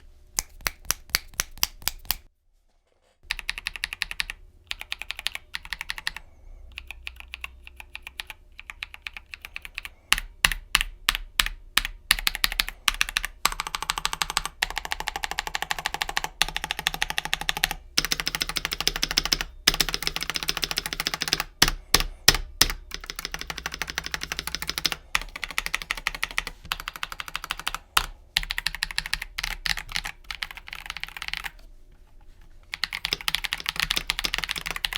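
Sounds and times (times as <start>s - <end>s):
typing on mechanical keyboard: 3.3s - 31.6s, 32.7s - 34.9s.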